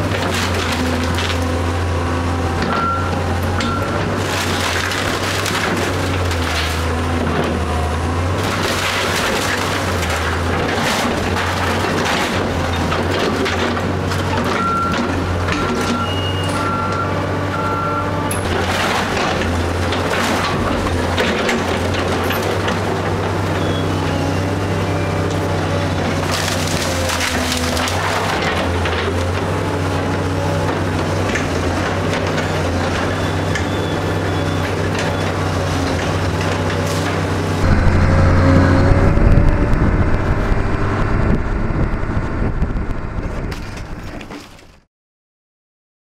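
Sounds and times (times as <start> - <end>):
wood cracking and splintering: 0.0 - 1.8, 3.5 - 15.9, 25.3 - 29.8
diesel engine running: 0.0 - 44.4
high beeps: 37.6 - 41.3.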